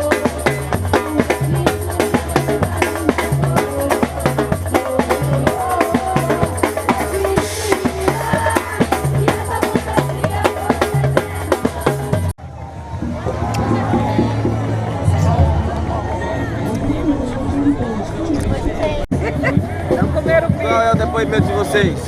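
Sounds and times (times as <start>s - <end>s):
percussion group drumming: 0.0s - 12.3s
bass drum pulsing: 0.0s - 22.0s.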